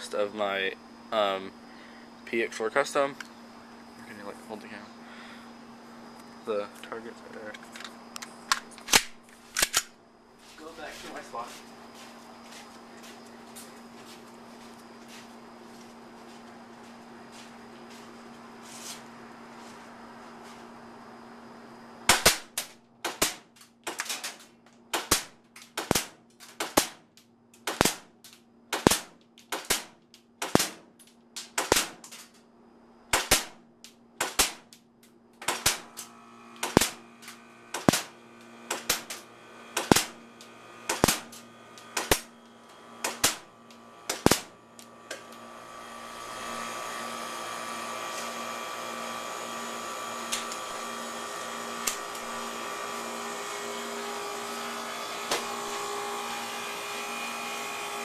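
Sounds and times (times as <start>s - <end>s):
airsoft pistol shots: 22.1s - 24.3s, 24.9s - 27.0s, 27.6s - 28.1s, 28.7s - 30.8s, 31.5s - 32.1s, 33.1s - 33.6s, 34.2s - 34.7s, 35.4s - 36.0s, 36.6s - 37.0s, 37.7s - 38.1s, 38.7s - 39.2s, 39.8s - 40.2s, 40.9s - 41.4s, 42.0s - 42.3s, 43.0s - 43.5s, 44.1s - 44.5s.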